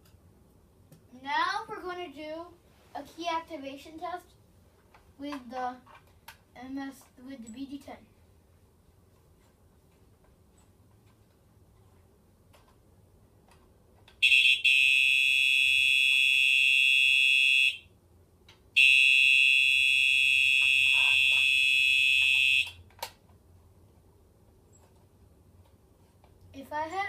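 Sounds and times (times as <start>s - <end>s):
fire alarm horns: 14.2s - 17.9s, 18.8s - 22.8s.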